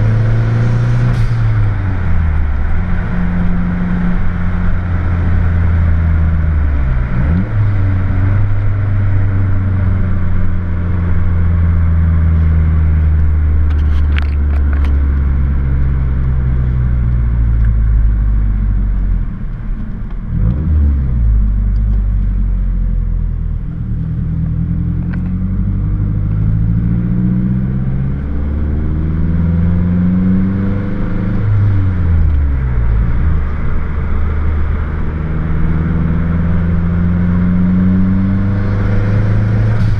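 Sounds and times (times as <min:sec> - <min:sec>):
car engine and exhaust accelerating: 0:00.0 - 0:39.9.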